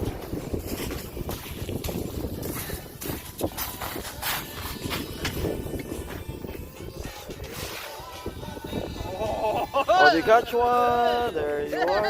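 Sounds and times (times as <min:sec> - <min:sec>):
footsteps crunching on snow: 0:00.0 - 0:08.6
wind rumble on microphone: 0:00.0 - 0:11.8.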